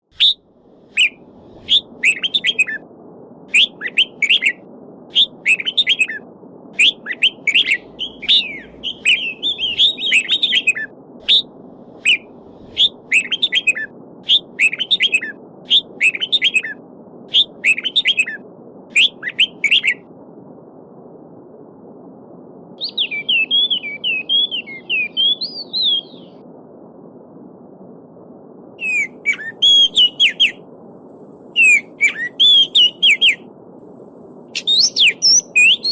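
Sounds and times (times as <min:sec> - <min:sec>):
songbirds chirping: 0:06.9 - 0:10.8.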